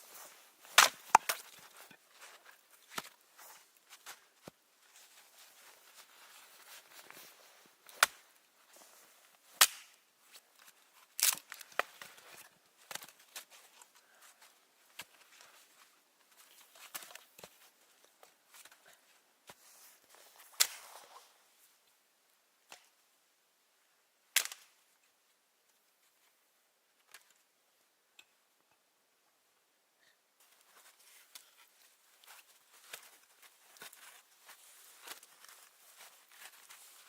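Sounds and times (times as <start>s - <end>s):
dry wood cracking and snapping: 0.7s - 1.9s, 11.2s - 11.9s.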